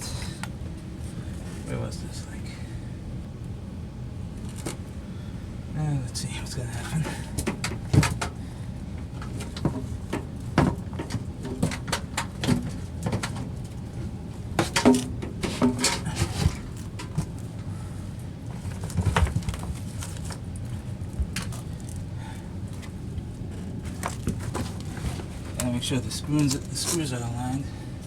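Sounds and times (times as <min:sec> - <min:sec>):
steady low hum: 0:00.0 - 0:28.0
pump parts knocking and clunking: 0:07.4 - 0:08.4, 0:09.2 - 0:13.5, 0:14.5 - 0:17.3.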